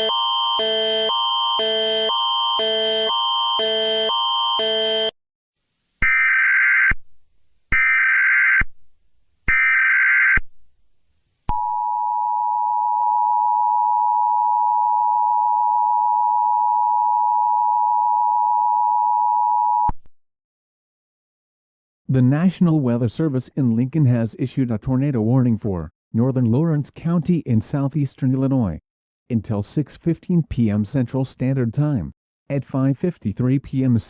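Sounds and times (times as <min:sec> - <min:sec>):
two-tone attention signal: 0:00.0 - 0:05.2.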